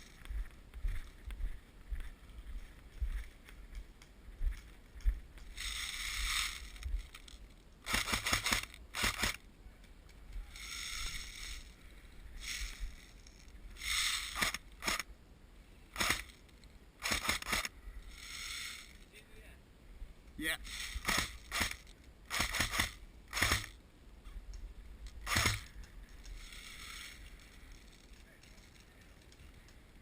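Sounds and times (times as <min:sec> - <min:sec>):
hissy rustling and scraping: 0:00.0 - 0:15.1, 0:15.9 - 0:19.3, 0:20.2 - 0:30.0
airsoft gun bursts: 0:07.8 - 0:09.4, 0:13.8 - 0:15.0, 0:15.9 - 0:16.4, 0:17.0 - 0:19.0, 0:20.6 - 0:23.8, 0:25.2 - 0:27.2.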